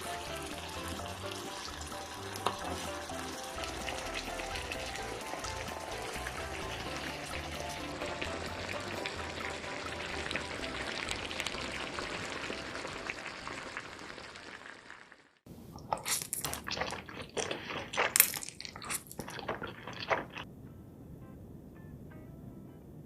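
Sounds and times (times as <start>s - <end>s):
crackling sizzle: 0.0s - 16.8s
wet chewing and crunching: 15.8s - 20.5s.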